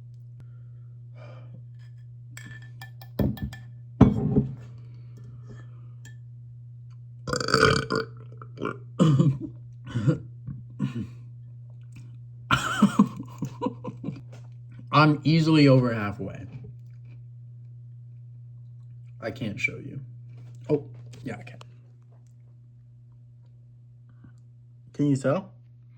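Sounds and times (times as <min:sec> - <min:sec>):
steady low hum: 0:00.0 - 0:25.9
man burping: 0:07.3 - 0:11.2
mouth and chewing noises: 0:16.5 - 0:17.2.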